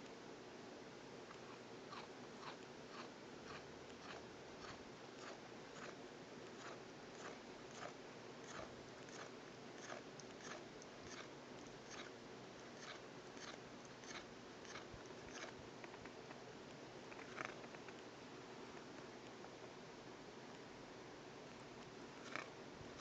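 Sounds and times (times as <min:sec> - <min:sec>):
steady low hiss: 0:00.0 - 0:23.0
cat grinding its teeth: 0:01.9 - 0:06.0, 0:06.6 - 0:15.6, 0:17.2 - 0:17.8, 0:22.2 - 0:23.0.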